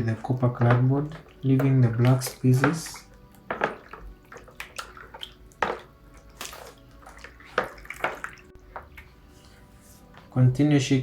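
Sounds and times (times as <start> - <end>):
liquid sloshing in a container: 0.0 - 10.3.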